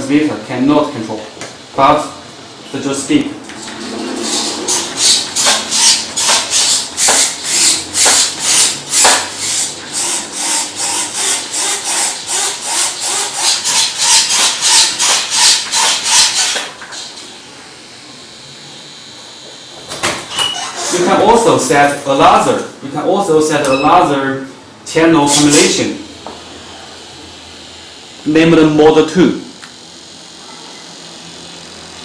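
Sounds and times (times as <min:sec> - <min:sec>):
model servos buzzing: 0:03.6 - 0:17.3, 0:17.9 - 0:21.7, 0:25.2 - 0:32.0.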